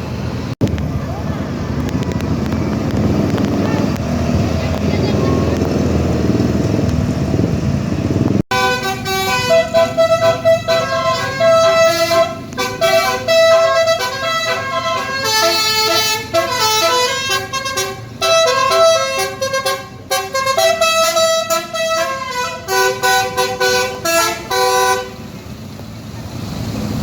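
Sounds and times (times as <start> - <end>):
bus air horns playing a tune: 8.5 - 25.3.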